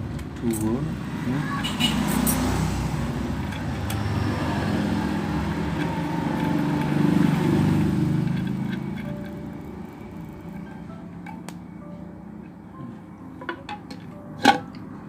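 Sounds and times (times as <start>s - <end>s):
vehicle engine passing by: 0.7s - 10.6s.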